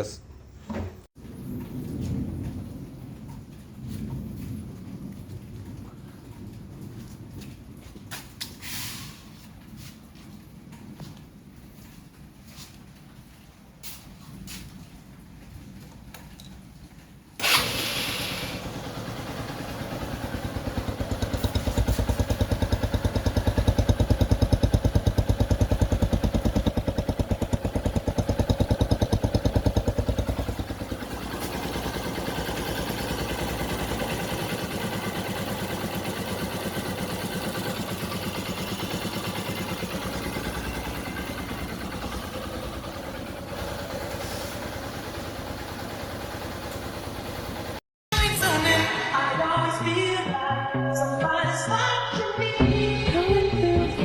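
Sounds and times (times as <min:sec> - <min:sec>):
motorcycle engine running: 0:17.4 - 0:47.8.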